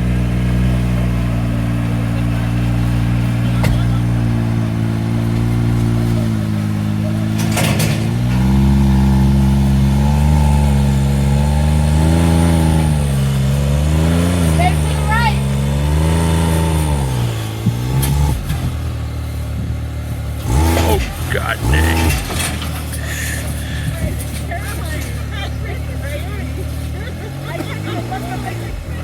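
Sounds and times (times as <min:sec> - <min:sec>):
vehicle engine running: 0:00.0 - 0:29.0
heavy clunk: 0:06.8 - 0:09.6, 0:20.4 - 0:25.2.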